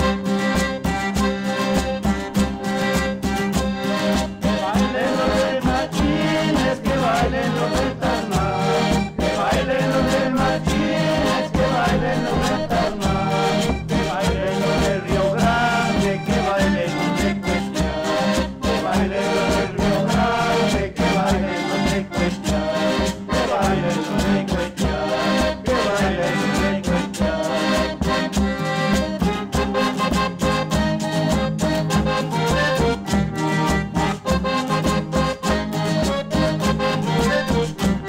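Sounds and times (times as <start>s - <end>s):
steady bass beat: 0.0s - 29.1s
andean dance tune melody: 7.4s - 24.0s, 27.0s - 38.0s.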